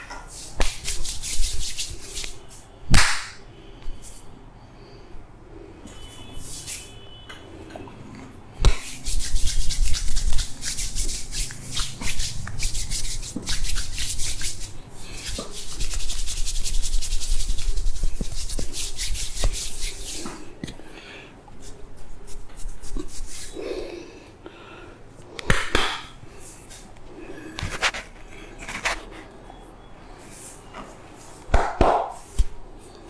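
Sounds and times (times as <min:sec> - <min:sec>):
hands rubbing hair: 0:00.3 - 0:02.6, 0:08.6 - 0:20.5, 0:21.6 - 0:23.6.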